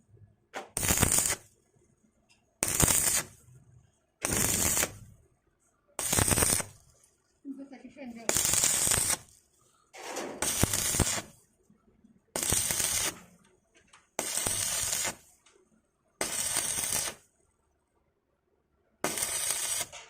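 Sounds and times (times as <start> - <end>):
welding arc crackling: 0.8 - 1.5, 2.6 - 3.4, 4.2 - 5.1, 6.0 - 6.9, 8.0 - 9.4, 10.4 - 11.4, 12.4 - 13.3, 14.2 - 15.3, 16.2 - 17.3, 19.0 - 20.0.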